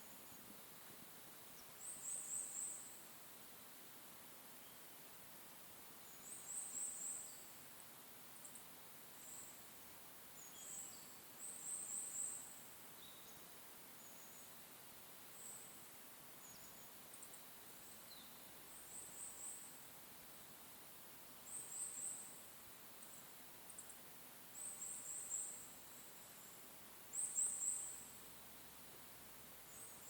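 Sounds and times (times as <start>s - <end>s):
faint steady hiss: 0.0s - 30.0s
small birds chirping trills: 10.4s - 14.7s, 15.3s - 20.7s, 24.6s - 28.9s, 29.6s - 30.0s.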